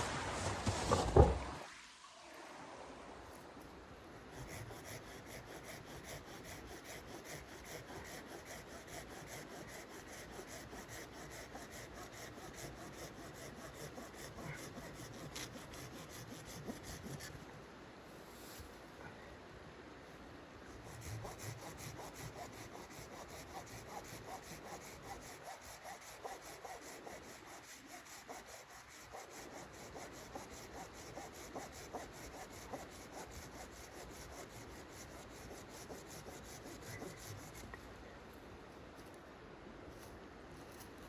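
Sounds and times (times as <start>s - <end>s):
hand saw cutting wood: 4.3s - 17.4s, 20.8s - 37.7s.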